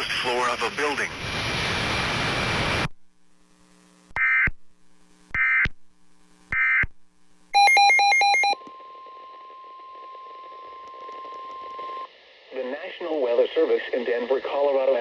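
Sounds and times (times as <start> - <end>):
radio static: 0.0 - 2.9, 12.5 - 15.0.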